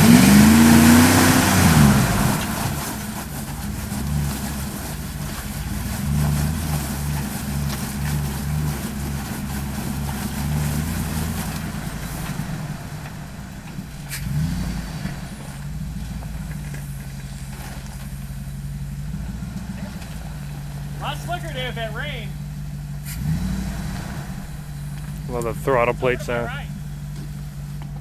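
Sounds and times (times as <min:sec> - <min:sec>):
off-road vehicle engine running: 0:00.0 - 0:28.0.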